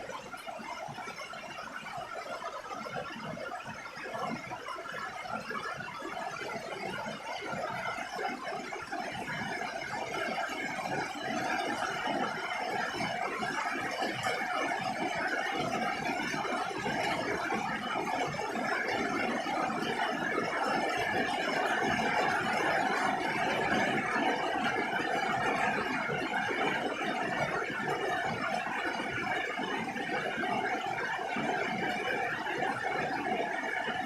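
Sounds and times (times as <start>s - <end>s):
rain on a roof: 8.9s - 33.8s.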